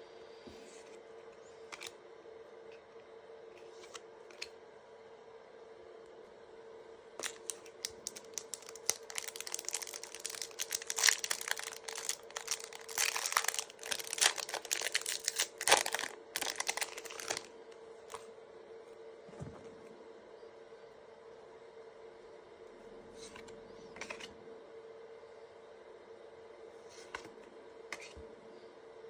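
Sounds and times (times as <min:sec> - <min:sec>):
faint steady hum: 0:00.0 - 0:29.0
foil wrapper crinkling and clicks: 0:07.2 - 0:17.5.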